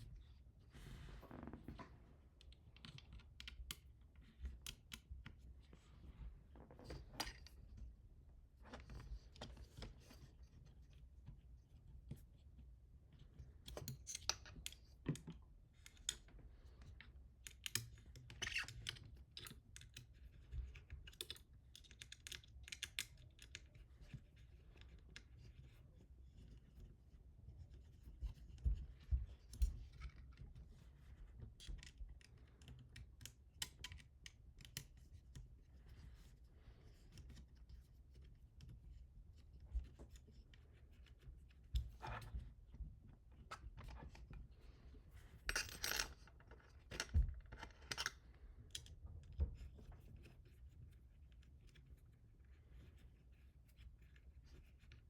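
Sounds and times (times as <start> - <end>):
hardware clicks taps and scrapes: 1.0 - 7.9, 27.5 - 51.9.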